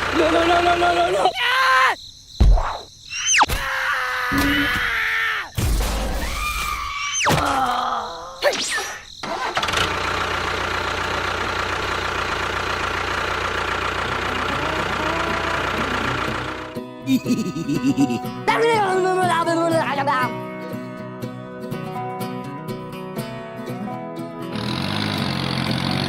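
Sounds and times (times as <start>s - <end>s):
engine starting and running: 0.0s - 1.0s, 9.2s - 16.8s, 24.5s - 26.0s.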